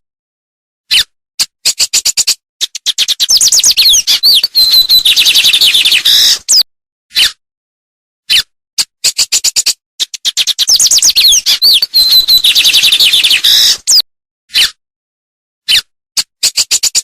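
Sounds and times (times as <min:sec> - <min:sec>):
songbird singing: 0:03.1 - 0:06.6, 0:10.4 - 0:14.0.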